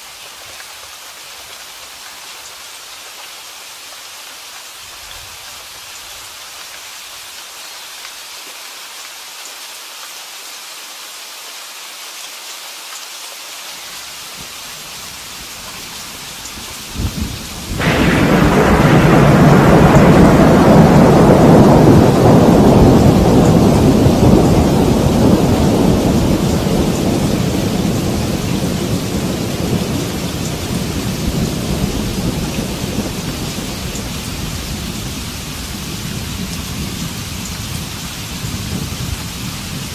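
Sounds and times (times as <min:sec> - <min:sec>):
steady rain falling: 0:00.0 - 0:39.9
thunderclap with deep rumble: 0:15.6 - 0:39.9.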